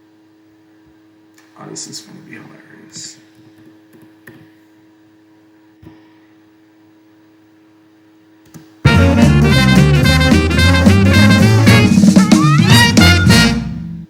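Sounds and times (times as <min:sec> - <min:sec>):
faint electrical hum: 0:00.0 - 0:14.0
swing music with drums and brass: 0:08.8 - 0:14.0.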